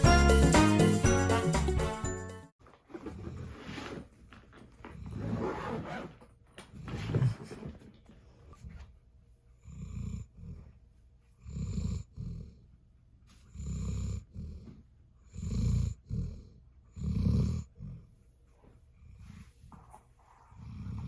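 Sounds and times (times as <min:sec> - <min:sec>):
dog snoring: 0:09.6 - 0:12.7, 0:13.5 - 0:18.2, 0:20.4 - 0:21.0.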